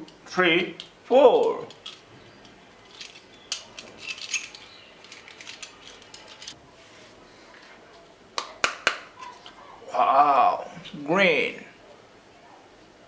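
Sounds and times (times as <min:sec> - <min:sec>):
plastic toy pieces clicking: 0:00.8 - 0:06.6.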